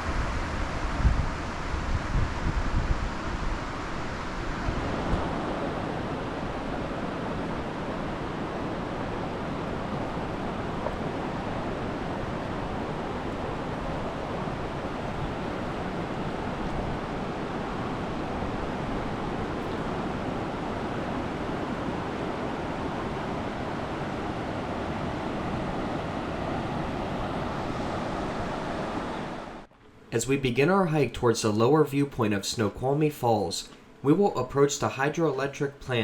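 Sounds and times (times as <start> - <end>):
wind buffeting microphone: 0.0 - 29.6
river and waterfall rushing: 0.0 - 31.1.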